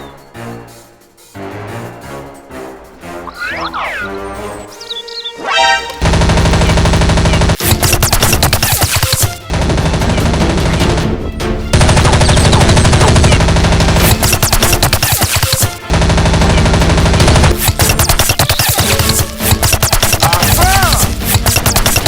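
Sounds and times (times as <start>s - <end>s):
music: 0.0s - 22.0s
automatic gunfire: 6.0s - 10.8s, 11.8s - 22.0s.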